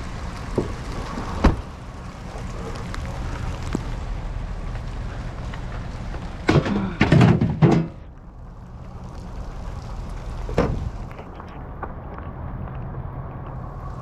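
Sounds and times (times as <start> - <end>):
loud thuds and knocks: 6.4 - 8.0.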